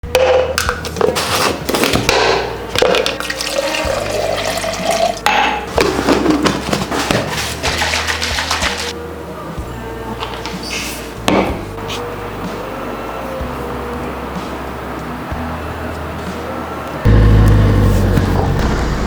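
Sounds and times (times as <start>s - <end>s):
tap water filling a container: 3.0s - 5.3s.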